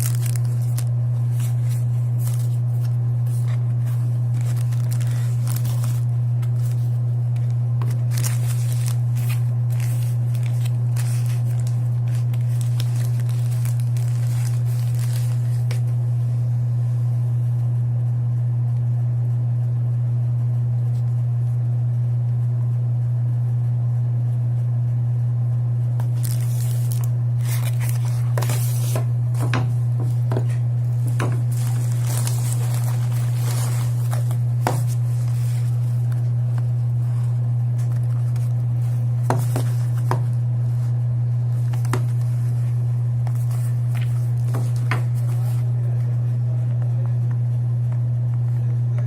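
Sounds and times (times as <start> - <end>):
packaging rustling and crinkling: 0.0 - 16.0, 26.0 - 40.3, 41.5 - 45.7
steady low hum: 0.0 - 49.0.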